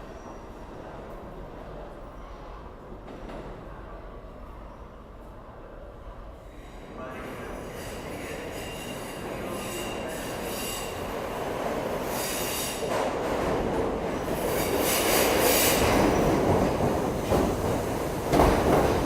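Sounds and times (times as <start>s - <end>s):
subway train rumbling: 0.0s - 19.0s
wheels squealing on rails: 7.6s - 11.1s.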